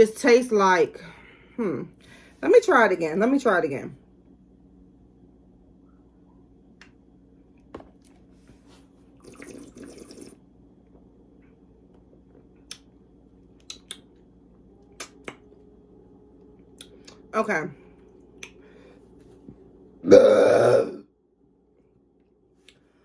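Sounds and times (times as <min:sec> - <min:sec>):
slurping soda: 0:09.2 - 0:10.4.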